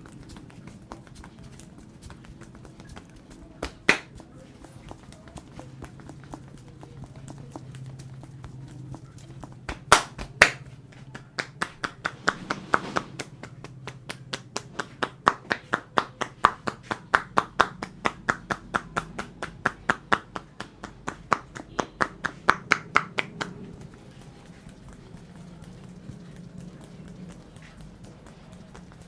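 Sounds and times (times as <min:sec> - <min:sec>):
sharp hand slaps: 0:02.9 - 0:05.2, 0:09.6 - 0:23.7.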